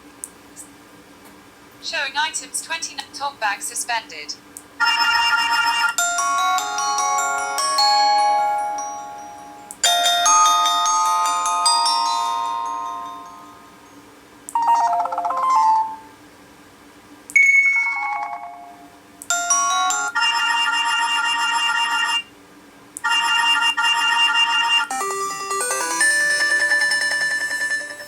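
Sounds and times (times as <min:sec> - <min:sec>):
electronic ringtone melodies: 0:04.8 - 0:13.9, 0:14.6 - 0:16.1, 0:17.4 - 0:22.2, 0:23.1 - 0:28.0.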